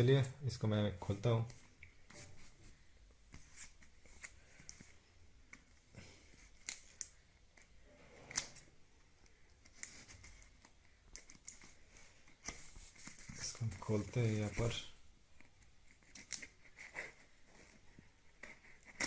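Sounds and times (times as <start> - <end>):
box being handled and opened: 9.6 - 15.0.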